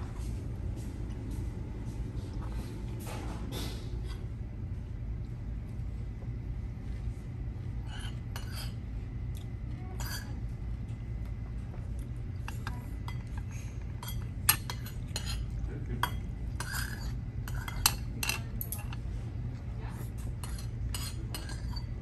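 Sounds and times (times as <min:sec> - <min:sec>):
steady low hum: 0:00.0 - 0:22.0
cutlery and dishes clinking: 0:12.4 - 0:19.0, 0:20.4 - 0:21.9.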